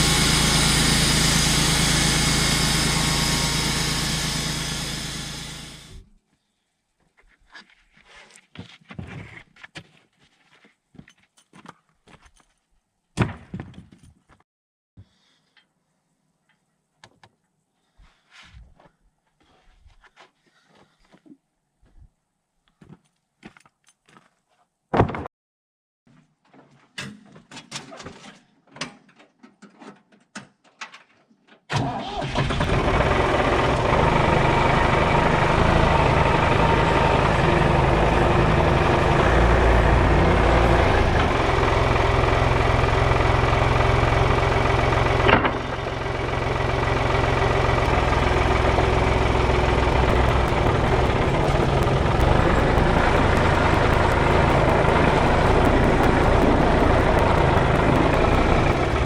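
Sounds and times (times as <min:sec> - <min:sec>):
engine running: 0:00.0 - 0:06.2, 0:32.0 - 0:59.0.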